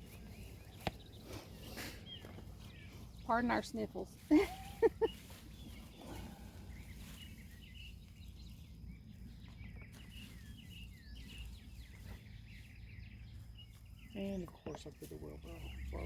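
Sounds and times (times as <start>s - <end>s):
faint birds chirping: 0.0s - 16.0s
low steady rumble: 0.0s - 16.0s.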